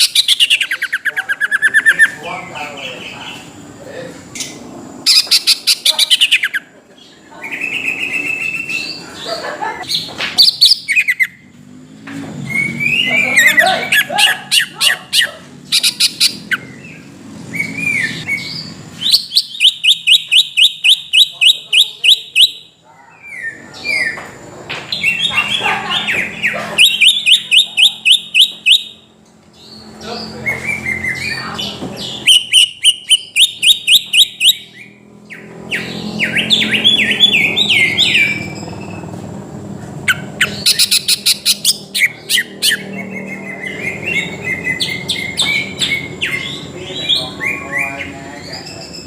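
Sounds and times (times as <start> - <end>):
bird whistle: 0.0 - 2.1, 5.1 - 6.6, 10.4 - 11.4, 12.5 - 16.9, 17.5 - 24.2, 25.0 - 29.1, 30.5 - 39.0, 40.1 - 48.0
bird singing sharp chirps: 0.0 - 3.6, 4.4 - 6.7, 7.4 - 9.2, 9.9 - 11.8, 12.4 - 24.3, 24.9 - 39.2, 40.0 - 49.0.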